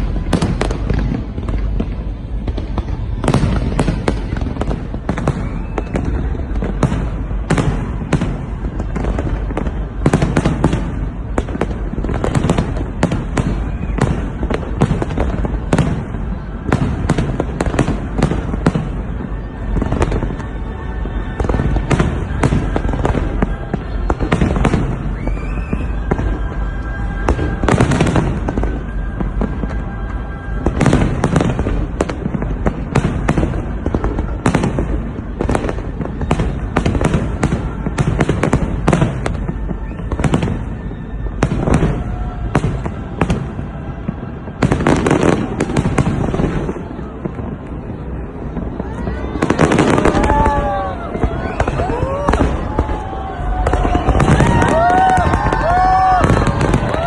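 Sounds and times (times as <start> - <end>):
fireworks booming and crackling: 0.0 - 57.0.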